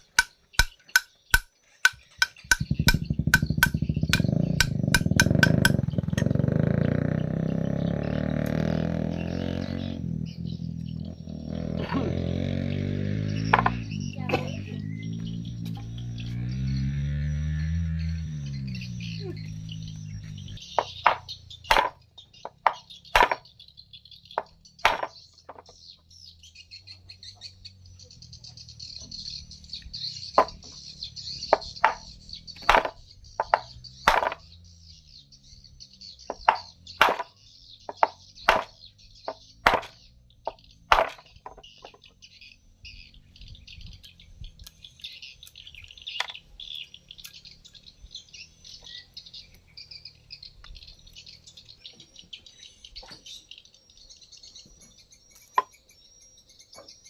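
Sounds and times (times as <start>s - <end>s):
sharp knocks: 0.0s - 6.4s, 13.5s - 13.8s, 20.8s - 23.5s, 24.4s - 25.7s, 31.5s - 34.4s, 36.3s - 41.6s
birds chirping: 0.0s - 57.0s.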